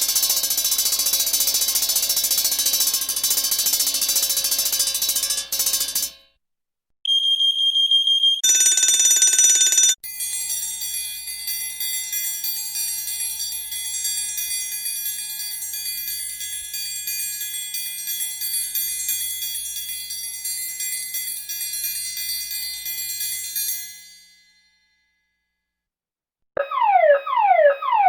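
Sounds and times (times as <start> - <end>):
fire alarm bell ringing: 7.1 - 24.2, 26.6 - 28.0
high electronic alarm tone: 26.6 - 28.0
pulsing alarm buzz: 26.6 - 28.0.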